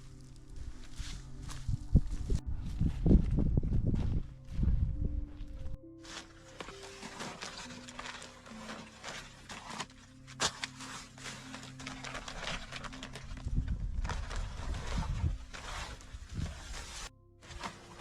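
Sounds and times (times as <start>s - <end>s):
low rumble: 0.0s - 6.0s, 13.1s - 17.4s
camping gear rustling and knocking: 0.0s - 18.0s.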